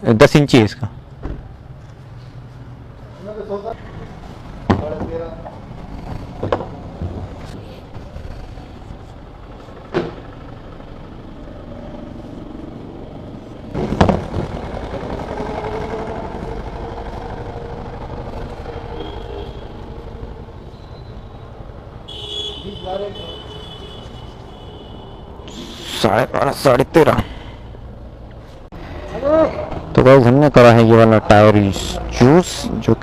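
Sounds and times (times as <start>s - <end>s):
traffic rumbling by: 0.0s - 33.0s
engine humming: 1.1s - 22.6s
sharp knocks: 4.6s - 5.6s, 6.3s - 7.4s.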